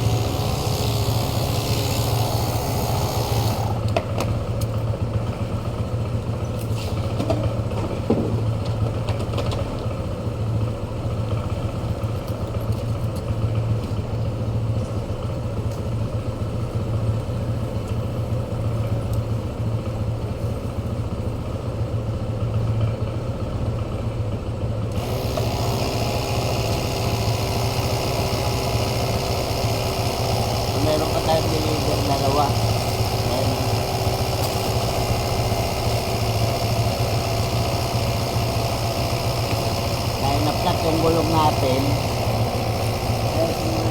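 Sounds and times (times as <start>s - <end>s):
motor running with low hum: 0.0s - 4.8s, 24.9s - 43.9s.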